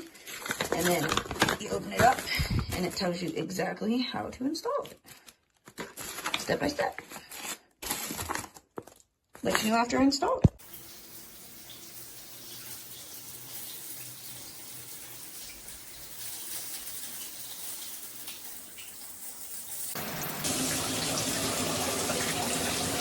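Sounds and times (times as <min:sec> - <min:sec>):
shower spraying water: 0:10.6 - 0:23.0.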